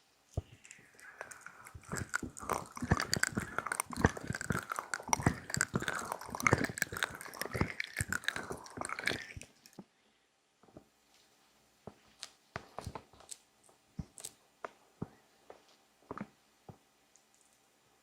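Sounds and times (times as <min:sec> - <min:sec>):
fingers rubbing on microphone: 0:00.4 - 0:09.7.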